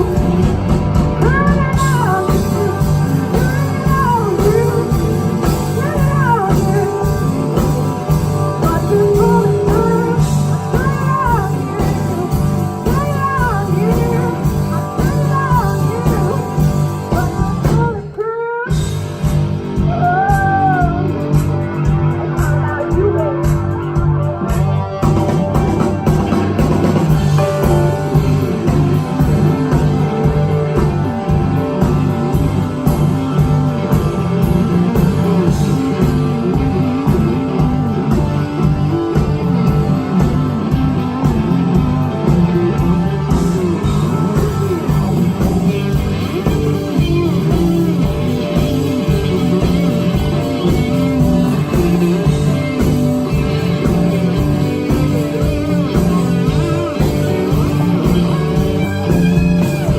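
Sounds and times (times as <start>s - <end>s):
blues-rock band playing: 0.0s - 59.9s
driving drum beat: 0.0s - 59.9s
electric guitar lines: 24.0s - 59.9s.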